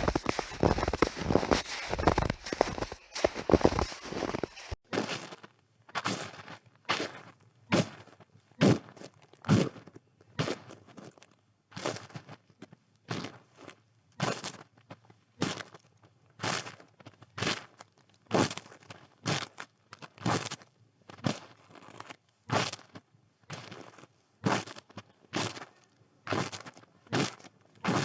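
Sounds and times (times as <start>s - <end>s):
footsteps crunching in snow: 0.0s - 4.8s.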